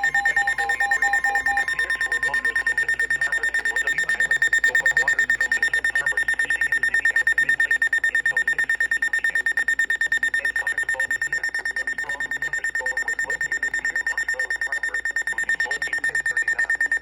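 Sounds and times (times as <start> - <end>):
rapid high-pitched beeping: 0.0 - 17.0.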